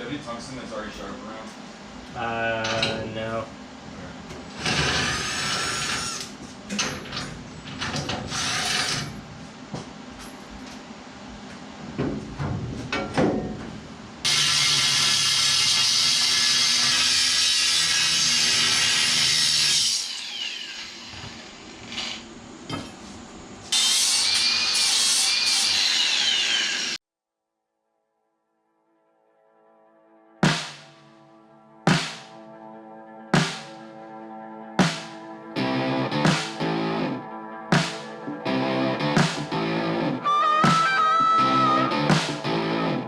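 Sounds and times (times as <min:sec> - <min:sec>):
power grinder grinding: 0:14.3 - 0:22.2, 0:23.7 - 0:27.0.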